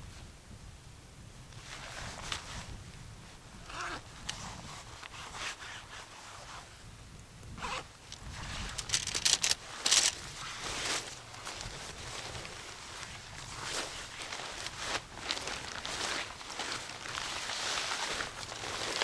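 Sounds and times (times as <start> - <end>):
camping gear rustling: 1.6 - 6.7, 7.6 - 19.0
quick clicks: 8.1 - 10.2.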